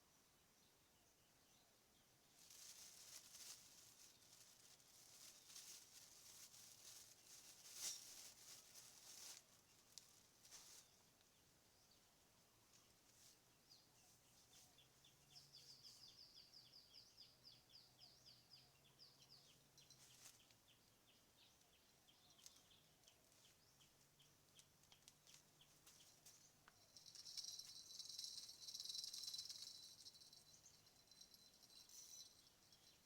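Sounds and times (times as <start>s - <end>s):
bird chirping: 12.7s - 33.0s.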